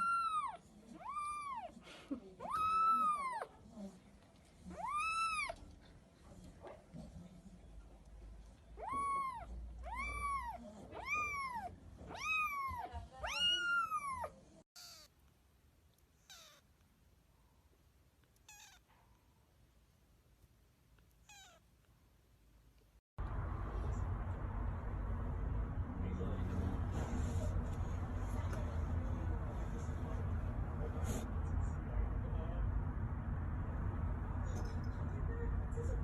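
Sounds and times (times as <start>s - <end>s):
kitten meowing: 0.0s - 1.7s, 2.4s - 3.5s, 4.7s - 5.6s, 8.8s - 15.1s, 16.2s - 16.6s, 18.4s - 18.8s, 21.2s - 21.6s
low rumbling background noise: 22.6s - 36.0s.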